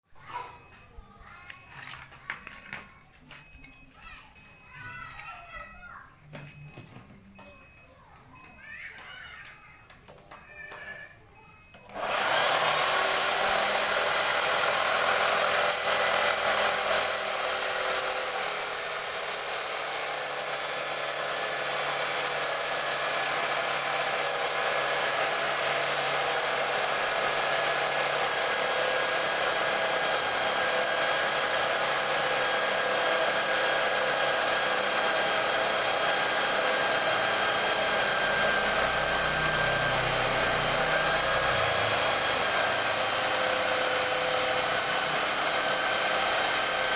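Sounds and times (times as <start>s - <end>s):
electric drill motor whine: 11.8s - 46.9s.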